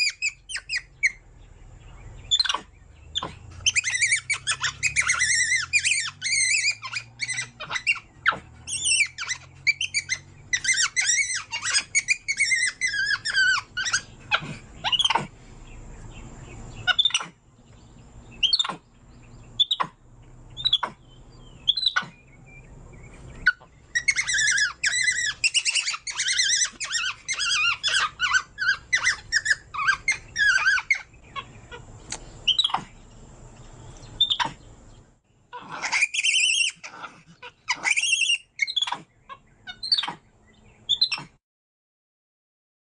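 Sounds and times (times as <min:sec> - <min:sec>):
monkey squeaking and chittering: 0:00.0 - 0:01.2, 0:02.3 - 0:15.4, 0:16.8 - 0:17.4, 0:18.4 - 0:18.9, 0:19.6 - 0:20.0, 0:20.6 - 0:21.0, 0:21.6 - 0:22.2, 0:23.4 - 0:33.0, 0:34.2 - 0:34.6, 0:35.5 - 0:40.2, 0:40.9 - 0:41.4.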